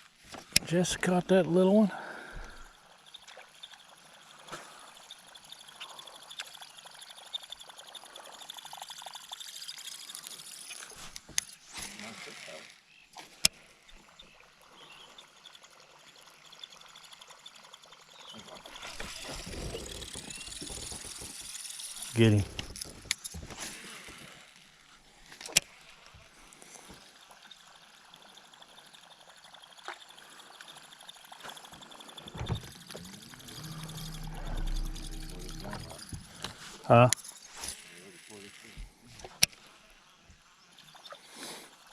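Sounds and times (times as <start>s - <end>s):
water trickling and splashing: 0.1s - 41.9s
sharp clicks and knocks: 29.8s - 37.8s.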